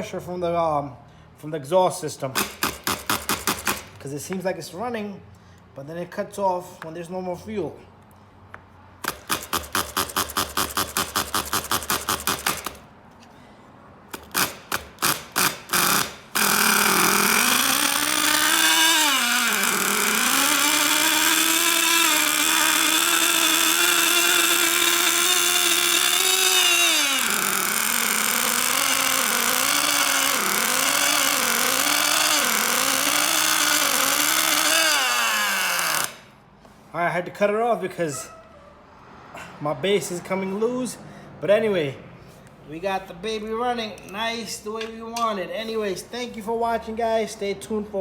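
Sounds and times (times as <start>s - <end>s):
small engine cranking: 2.4s - 4.0s, 9.0s - 12.9s, 14.0s - 36.3s
small engine running high-pitched: 14.3s - 36.3s.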